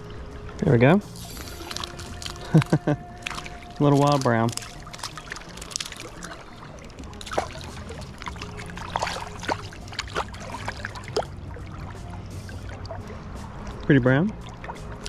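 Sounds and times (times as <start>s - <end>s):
river flowing: 0.0s - 15.0s
sharp water plinks: 0.0s - 15.0s
water splashing and dripping: 0.0s - 15.0s.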